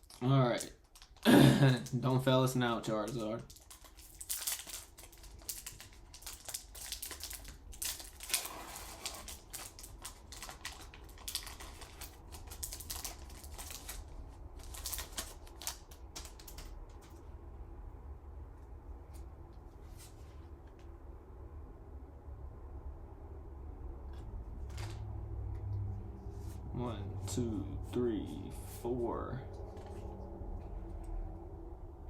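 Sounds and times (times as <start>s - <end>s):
foil wrapper crinkling and tearing: 0.0s - 17.2s.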